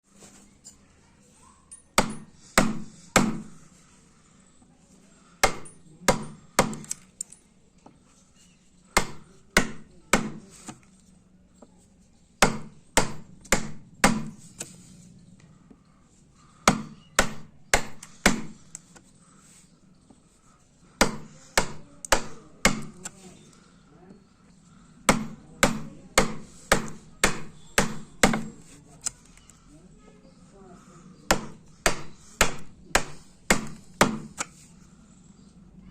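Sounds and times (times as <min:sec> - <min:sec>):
hand tool striking wood: 0:02.0 - 0:03.5, 0:05.4 - 0:07.0, 0:09.0 - 0:10.8, 0:12.4 - 0:14.7, 0:16.6 - 0:18.6, 0:21.0 - 0:23.2, 0:25.1 - 0:28.6, 0:31.3 - 0:34.5.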